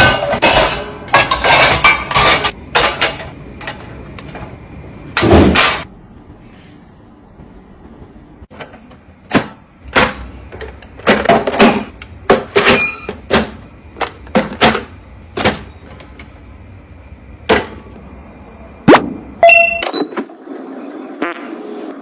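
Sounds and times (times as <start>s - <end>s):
kitchen items tapping and clacking: 0.0s - 4.6s, 8.5s - 16.3s.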